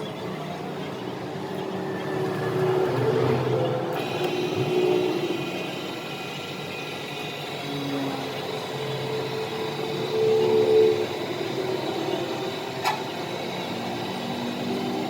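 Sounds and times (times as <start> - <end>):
high-pitched whine: 4.0 - 15.0.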